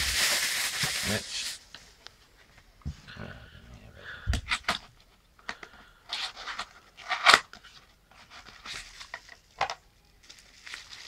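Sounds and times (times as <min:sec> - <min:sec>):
crinkling and tearing handling noise: 0:04.4 - 0:11.0.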